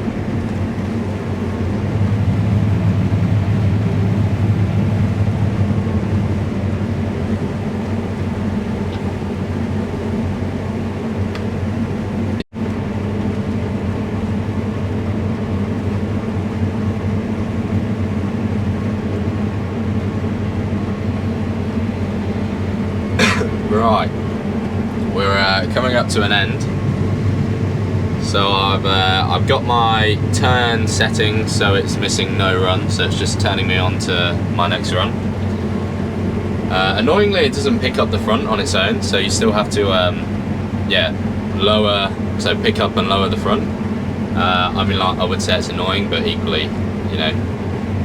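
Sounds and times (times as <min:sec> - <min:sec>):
combine harvester engine drone: 0:00.0 - 0:48.0.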